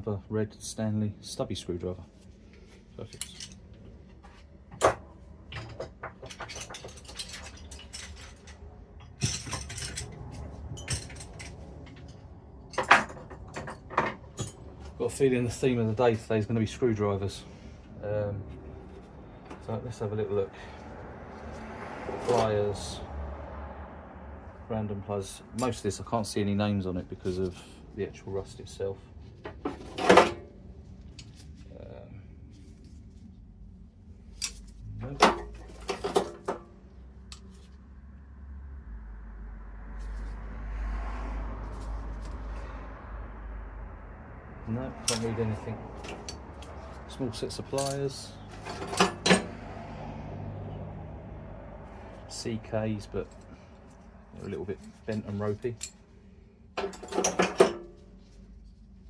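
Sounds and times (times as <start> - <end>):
metal hand tools clinking and rattling: 3.0 - 3.6, 5.5 - 16.3, 25.6 - 25.9, 34.3 - 36.6, 45.0 - 49.6, 56.8 - 58.0.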